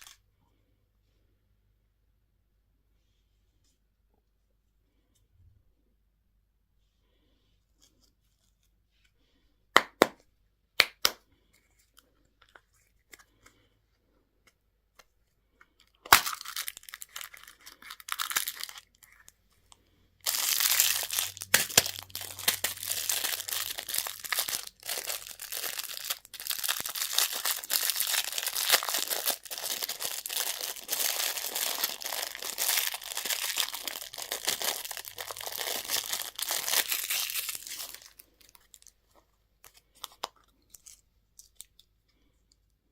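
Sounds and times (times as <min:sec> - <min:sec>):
candy wrapper tearing and crinkling: 0:00.0 - 0:00.2, 0:15.8 - 0:19.4, 0:20.2 - 0:39.0, 0:39.6 - 0:42.0.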